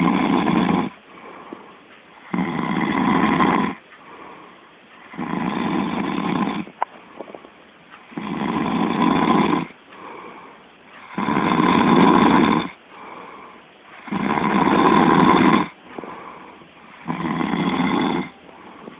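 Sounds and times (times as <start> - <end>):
man snoring heavily: 0.0 - 1.3, 2.2 - 3.8, 5.0 - 6.8, 8.1 - 10.3, 11.0 - 13.3, 14.0 - 18.9
quiet breathing: 0.0 - 18.9.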